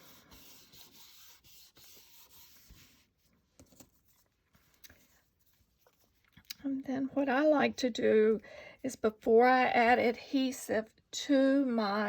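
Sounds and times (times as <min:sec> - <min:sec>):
paper rubbing by hand: 0:00.0 - 0:03.2.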